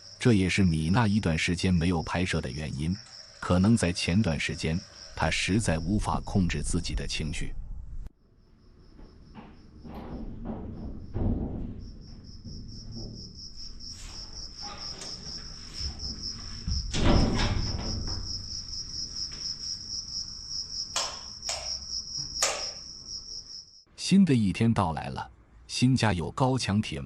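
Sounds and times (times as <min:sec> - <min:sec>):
crickets chirping: 0:00.0 - 0:23.9
knocks and thumps: 0:08.9 - 0:19.5, 0:20.9 - 0:22.8.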